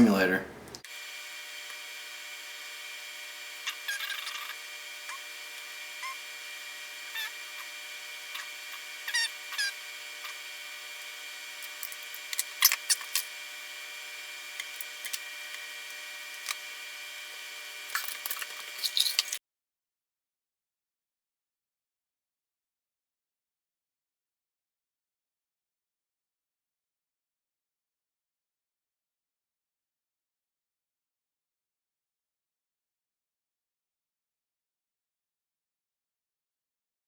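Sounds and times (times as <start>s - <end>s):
circuit board being handled: 17.9s - 19.4s.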